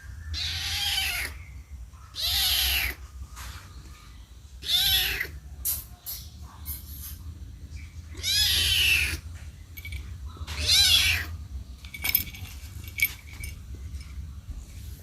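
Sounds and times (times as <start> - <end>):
kitten meowing: 0.4 - 1.4, 4.6 - 5.4, 8.1 - 9.2.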